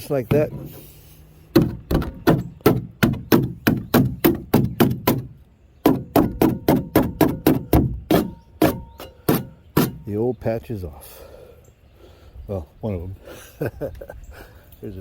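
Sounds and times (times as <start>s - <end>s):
tool knocking on plastic: 1.5s - 10.0s.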